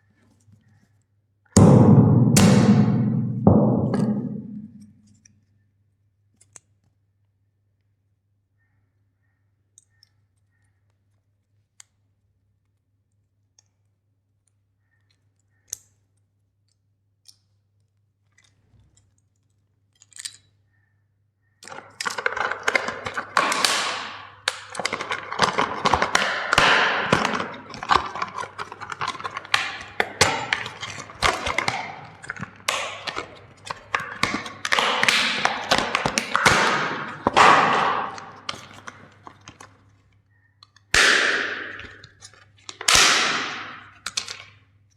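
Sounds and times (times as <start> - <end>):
hammer smashing plastic toys: 21.6 - 39.7, 40.9 - 44.5.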